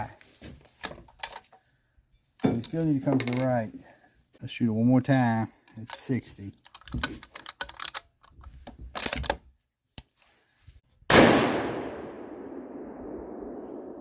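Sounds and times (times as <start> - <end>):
rifle shot ringing out: 11.1 - 14.0.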